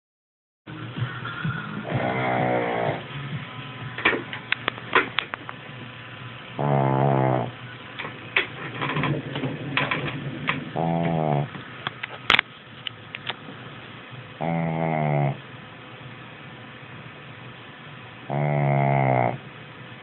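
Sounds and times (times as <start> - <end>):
dog snoring: 1.8 - 3.1, 6.6 - 7.6, 10.7 - 11.6, 14.4 - 15.4, 18.2 - 19.5
clicking snorts: 10.8 - 11.5, 14.4 - 15.4, 18.3 - 19.4.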